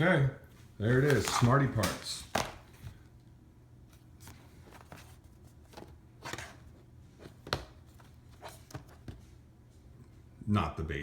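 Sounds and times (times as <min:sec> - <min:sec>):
packaging rustling: 0:00.8 - 0:03.0.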